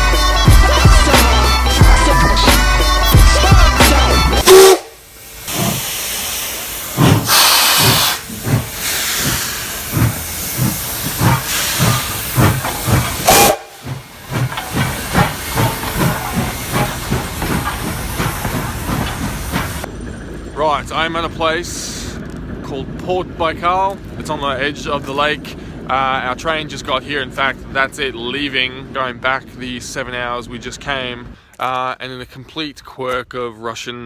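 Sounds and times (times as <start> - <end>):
train rushing hiss: 3.8 - 19.9
wheels knocking on rail joints: 5.5 - 31.3.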